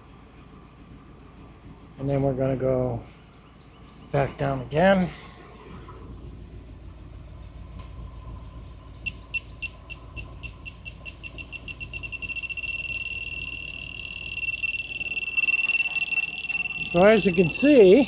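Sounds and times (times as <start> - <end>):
truck engine running: 0.0 - 18.0
detector alarm beeping: 9.0 - 18.0.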